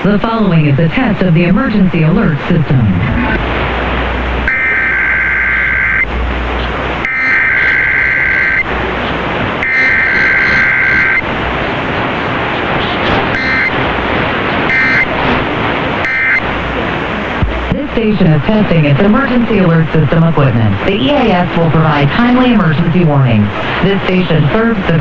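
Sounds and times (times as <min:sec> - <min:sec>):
radio static hiss: 0:00.0 - 0:25.0
raspy digital data bursts: 0:09.6 - 0:11.2, 0:13.4 - 0:13.8, 0:14.7 - 0:15.2.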